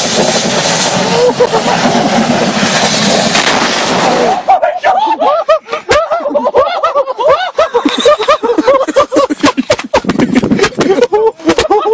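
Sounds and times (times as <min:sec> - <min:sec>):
people laughing hard: 0:01.1 - 0:02.6, 0:04.6 - 0:11.9.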